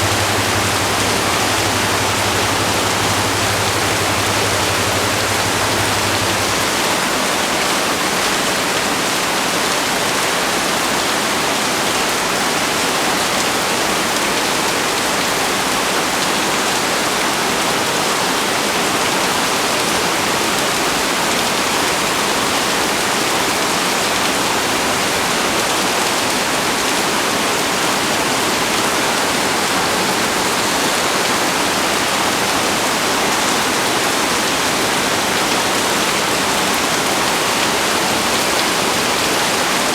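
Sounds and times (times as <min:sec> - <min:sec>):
heavy rain pouring: 0:00.0 - 0:39.9.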